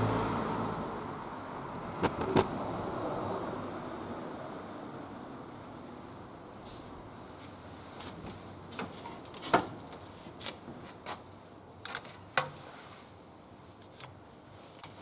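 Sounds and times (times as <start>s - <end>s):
wood fire crackling: 4.4s - 11.8s.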